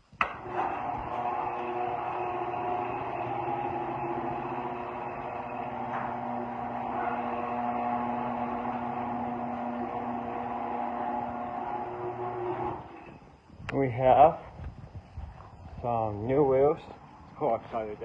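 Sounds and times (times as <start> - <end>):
garage door opener motor hum: 0.0 - 13.3.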